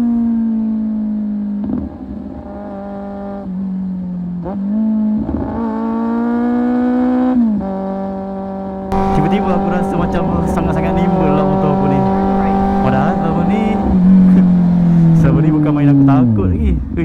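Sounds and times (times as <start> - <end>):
motorcycle engine running: 8.9 - 15.8.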